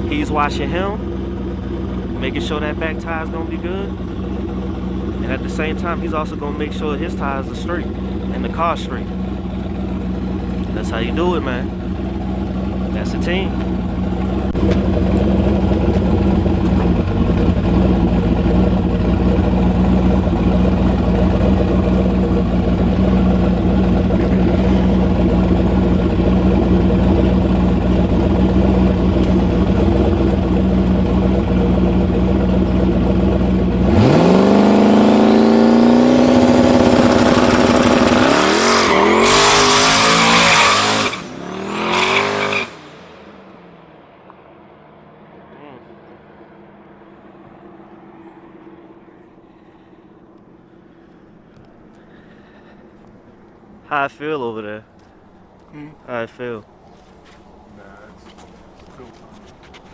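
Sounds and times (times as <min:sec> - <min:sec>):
tyres spinning on dirt: 0:00.0 - 0:42.9, 0:50.0 - 0:59.9
engine revving sharply: 0:00.0 - 0:43.3
car engine idling: 0:00.0 - 0:59.9.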